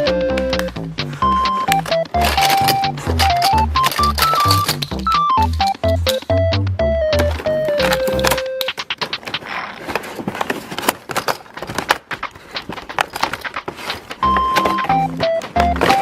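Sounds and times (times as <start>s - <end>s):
simple background music: 0.0s - 9.0s, 13.0s - 16.0s
plastic toy pieces clattering: 1.6s - 6.3s, 7.2s - 16.0s.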